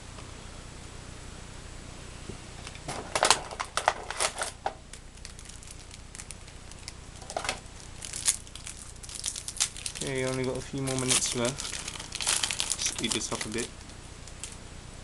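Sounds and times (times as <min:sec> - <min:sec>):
foil wrapper crinkling: 0:03.0 - 0:14.6.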